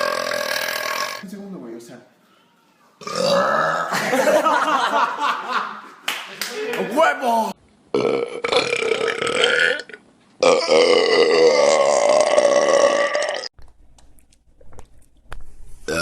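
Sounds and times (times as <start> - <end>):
person belching: 0.0 - 1.2, 3.0 - 4.0, 7.9 - 13.5.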